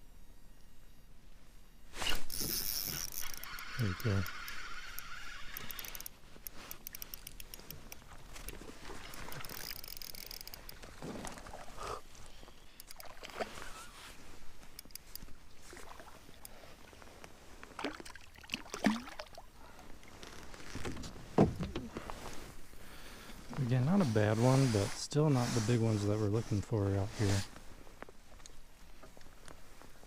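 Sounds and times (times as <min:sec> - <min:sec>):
small water splashes: 0:12.8 - 0:13.7, 0:15.6 - 0:16.4, 0:17.7 - 0:19.5.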